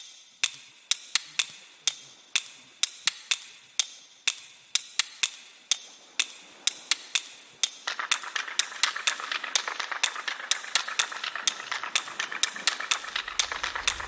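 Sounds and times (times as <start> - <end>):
dense rattling noise: 7.8 - 14.0
sharp clicks: 7.8 - 14.0.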